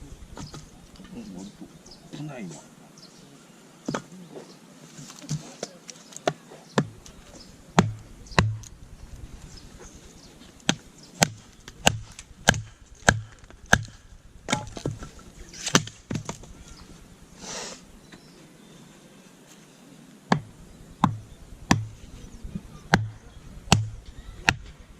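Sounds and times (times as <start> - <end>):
firewood being chopped: 3.9 - 4.1, 5.1 - 8.8, 10.6 - 17.0, 20.3 - 22.0, 22.8 - 24.8.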